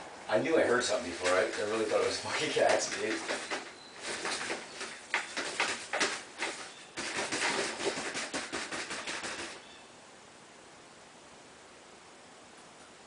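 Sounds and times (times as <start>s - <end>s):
bird scrabbling in a duct: 0.6s - 9.8s.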